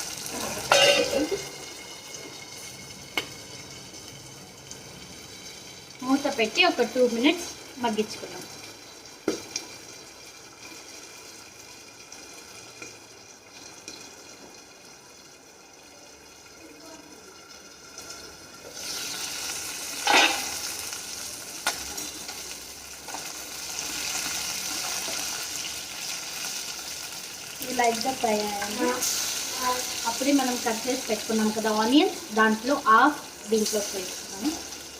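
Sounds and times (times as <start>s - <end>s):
food sizzling in oil: 0.0s - 34.9s.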